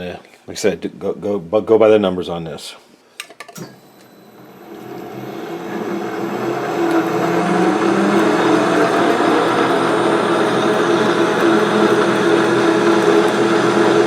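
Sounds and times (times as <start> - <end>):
lathe motor with gear whine: 4.1 - 14.0.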